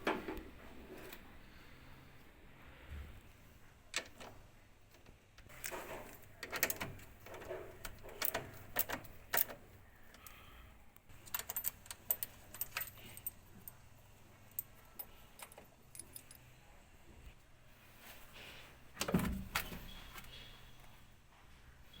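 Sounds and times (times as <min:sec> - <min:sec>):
small metallic rattles: 0:03.9 - 0:10.5, 0:11.1 - 0:13.8, 0:14.4 - 0:16.5.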